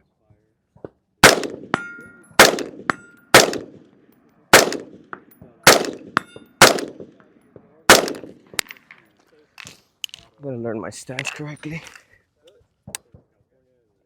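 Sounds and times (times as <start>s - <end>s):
rifle shots: 1.2s - 3.9s, 4.5s - 7.3s, 7.9s - 8.7s.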